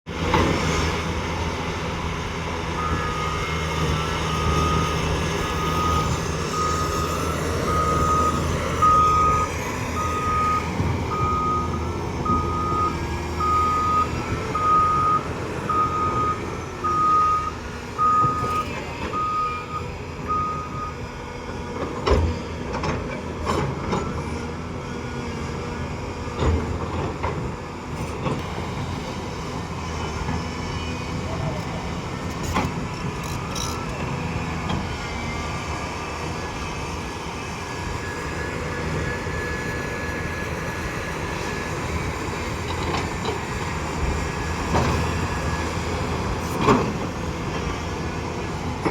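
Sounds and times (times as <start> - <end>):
diesel earthmoving machinery running: 0.1 - 48.9
reversing alarm beeping: 2.7 - 21.0.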